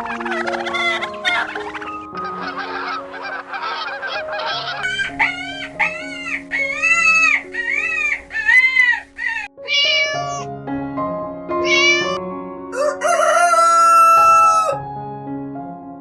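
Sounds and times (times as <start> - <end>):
animal calls: 0.0 - 10.1
background music: 0.0 - 15.9.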